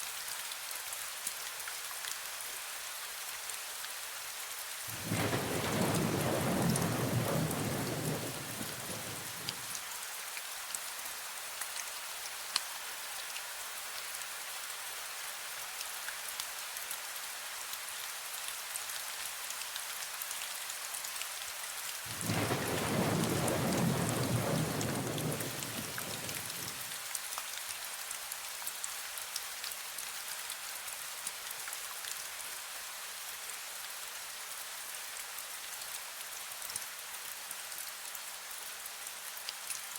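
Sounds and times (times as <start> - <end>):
steady rain falling: 0.0 - 39.9
low thunder rolls: 4.9 - 9.7, 22.1 - 26.9.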